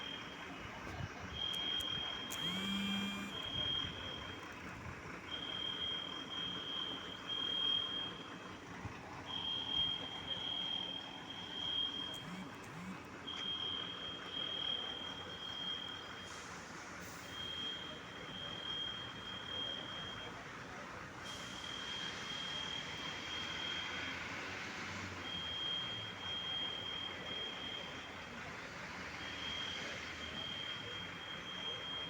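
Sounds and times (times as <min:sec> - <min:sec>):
alarm siren high beeps: 0:01.3 - 0:04.4, 0:09.3 - 0:16.4, 0:17.2 - 0:20.4, 0:21.6 - 0:24.1, 0:25.2 - 0:28.0, 0:29.3 - 0:32.0.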